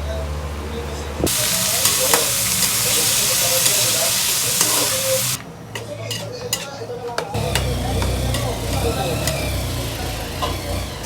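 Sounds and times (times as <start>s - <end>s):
food sizzling in a frying pan: 1.2s - 5.4s.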